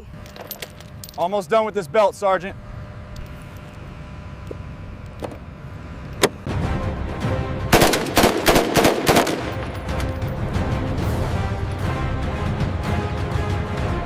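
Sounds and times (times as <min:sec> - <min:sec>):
background music: 0:06.5 - 0:14.0
machine-gun fire: 0:07.7 - 0:10.0.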